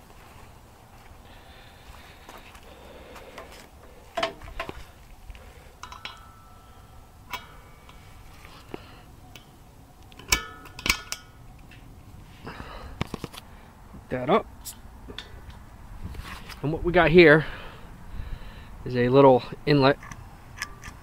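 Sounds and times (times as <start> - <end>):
metallic clicks and clinks: 5.8 - 6.6.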